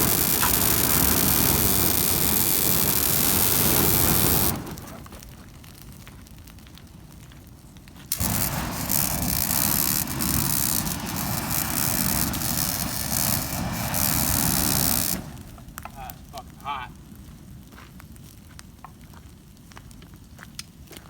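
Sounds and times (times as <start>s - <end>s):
flamethrower rush of burning fuel: 0.0s - 5.9s, 8.1s - 17.7s
trash pile fire crackling: 0.0s - 21.0s.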